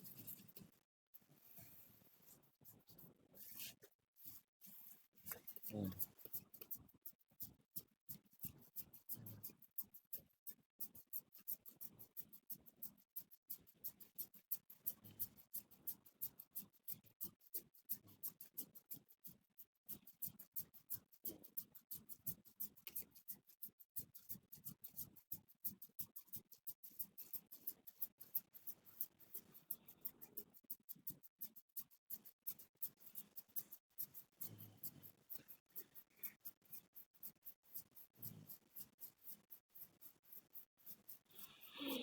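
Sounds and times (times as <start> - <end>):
fingers scratching scalp hair: 0.0 - 0.6, 20.2 - 42.0.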